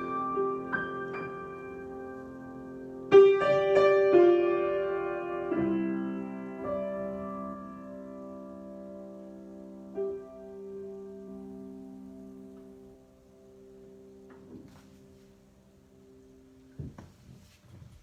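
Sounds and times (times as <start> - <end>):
solo piano chords: 0.0 - 17.2.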